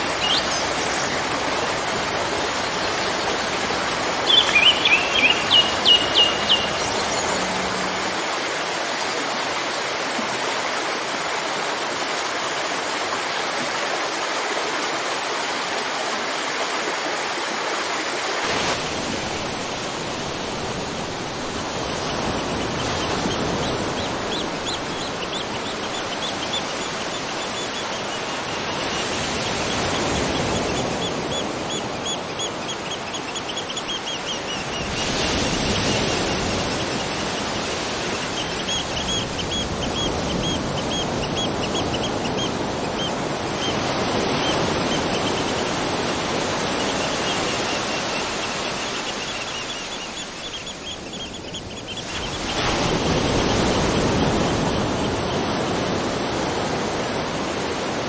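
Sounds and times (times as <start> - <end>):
waterfall rushing: 0.0 - 58.0
bird chirping: 4.2 - 8.1.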